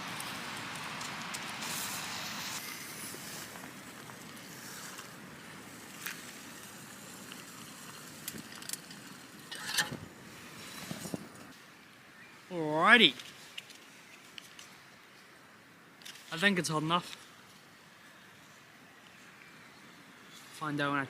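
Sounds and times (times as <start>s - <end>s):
camp stove burner hissing: 0.0s - 11.6s
rustle of handling pot: 0.0s - 11.6s.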